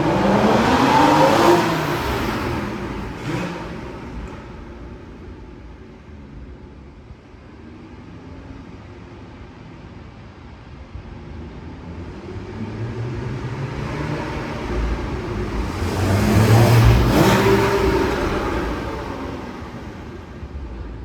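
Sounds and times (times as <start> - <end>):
sports car accelerating past: 0.0 - 5.7, 12.0 - 20.6.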